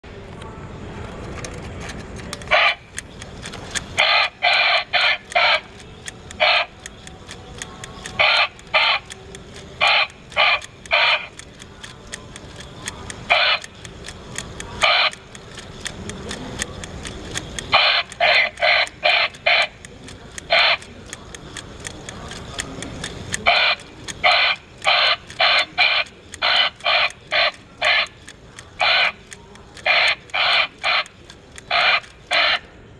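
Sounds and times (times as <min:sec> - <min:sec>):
faint ticking: 0:02.3 - 0:32.9
electronic bird squawks: 0:02.5 - 0:02.9, 0:04.0 - 0:05.8, 0:06.4 - 0:06.9, 0:08.1 - 0:09.2, 0:09.8 - 0:11.3, 0:13.3 - 0:13.7, 0:14.8 - 0:15.2, 0:17.7 - 0:19.8, 0:20.5 - 0:20.9, 0:23.5 - 0:28.2, 0:28.8 - 0:31.1, 0:31.7 - 0:32.7.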